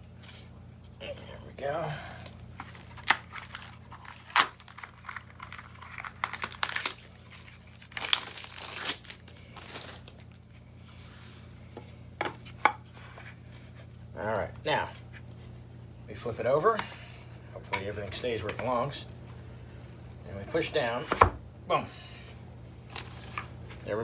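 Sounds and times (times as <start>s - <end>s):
low steady hum: 0.0s - 24.0s
crinkling and rustling: 2.0s - 11.5s, 22.8s - 24.0s.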